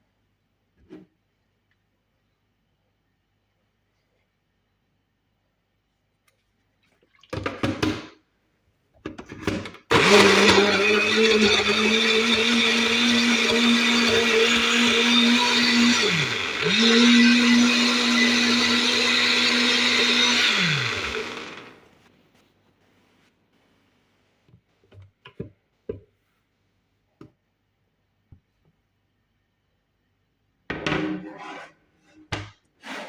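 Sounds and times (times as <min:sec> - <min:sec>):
electric blender running: 0:09.9 - 0:21.8.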